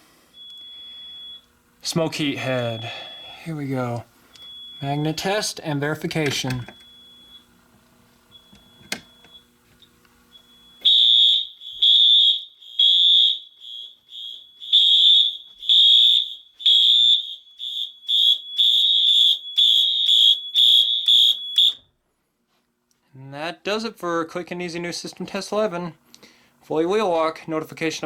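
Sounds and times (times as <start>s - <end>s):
faint hum: 0.0s - 11.9s, 20.8s - 28.0s
fire alarm horn pulsing: 2.1s - 5.8s, 10.3s - 21.9s.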